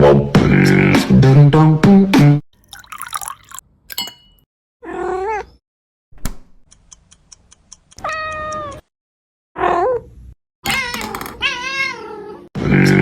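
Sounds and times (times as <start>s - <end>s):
cat meowing: 10.7s - 12.5s.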